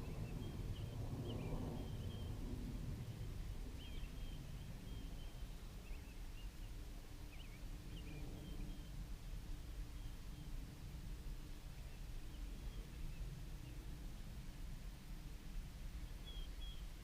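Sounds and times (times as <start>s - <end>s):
low outdoor rumble: 0.0s - 17.0s
small birds chirping: 3.1s - 9.0s, 16.0s - 17.0s.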